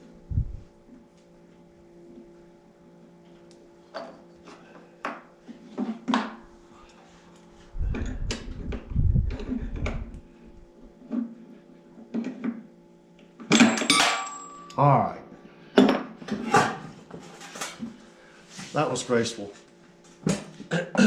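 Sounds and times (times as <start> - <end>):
steady low hum: 0.0 - 21.0
metal parts thumping: 13.5 - 14.7.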